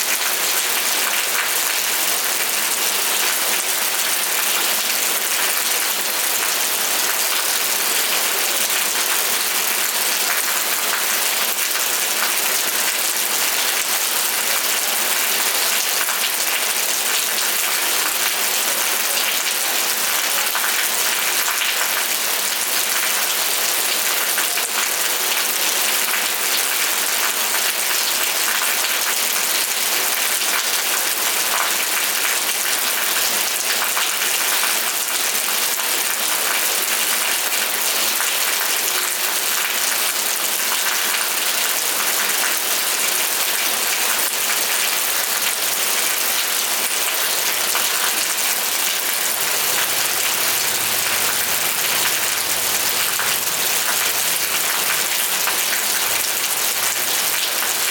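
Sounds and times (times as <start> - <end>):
steady rain hiss: 48.7 - 57.9.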